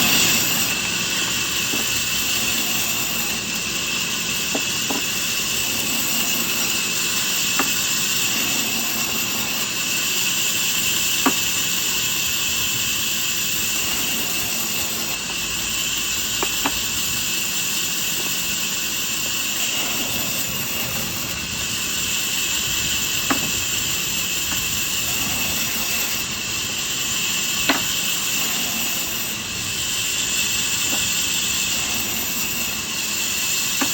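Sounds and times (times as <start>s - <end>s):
woodworking machine whining: 0.0s - 33.9s.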